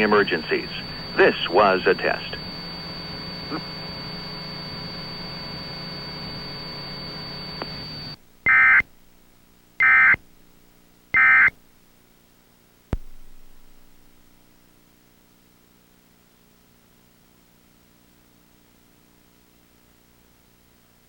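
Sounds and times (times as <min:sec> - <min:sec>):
digital data screech bursts: 0:00.0 - 0:02.4
steady high whine and hum: 0:00.0 - 0:21.0.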